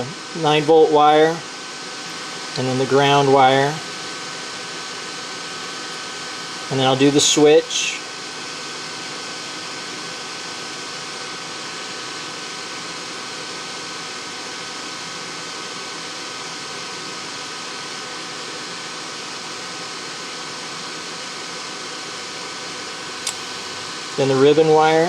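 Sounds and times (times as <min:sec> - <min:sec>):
faint high hum: 0:00.0 - 0:25.0
steady background hiss: 0:00.0 - 0:25.0.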